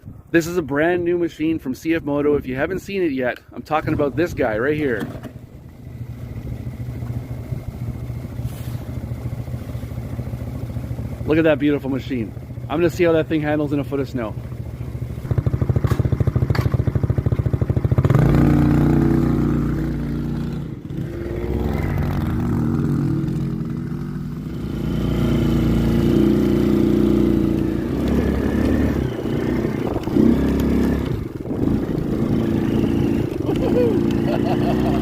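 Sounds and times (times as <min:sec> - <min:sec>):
quad engine revving: 0:15.2 - 0:35.0.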